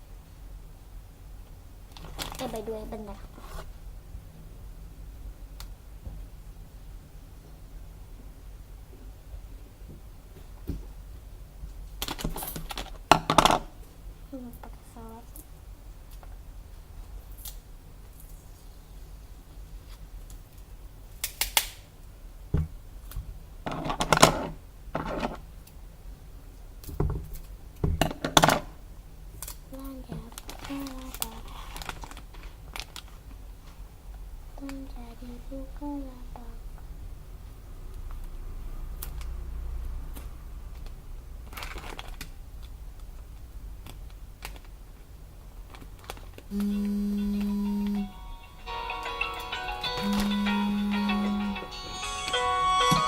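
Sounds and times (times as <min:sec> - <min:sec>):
packaging rustling and clicking: 0:30.3 - 0:33.2, 0:41.5 - 0:42.3, 0:45.6 - 0:46.5
steady low hum: 0:46.5 - 0:48.7, 0:49.9 - 0:51.8.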